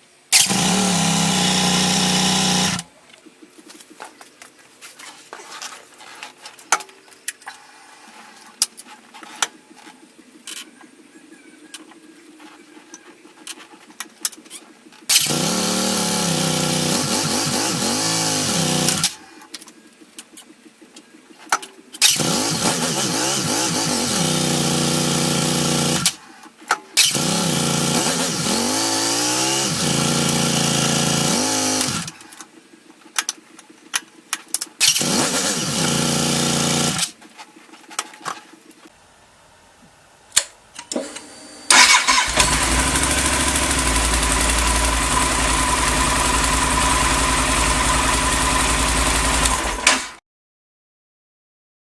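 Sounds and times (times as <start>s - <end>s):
motorcycle engine starting and revving: 0.3s - 2.9s, 15.0s - 19.2s, 22.0s - 26.2s, 27.0s - 32.2s, 34.8s - 37.1s, 41.0s - 50.2s.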